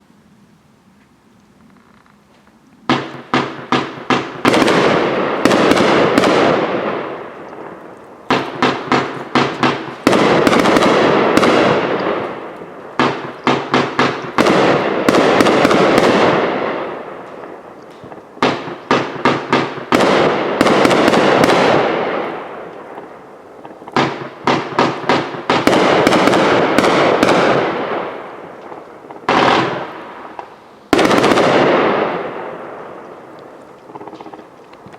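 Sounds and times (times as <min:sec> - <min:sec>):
firework sharp pops: 0:02.4 - 0:34.9
firework noisy burst: 0:08.3 - 0:17.1.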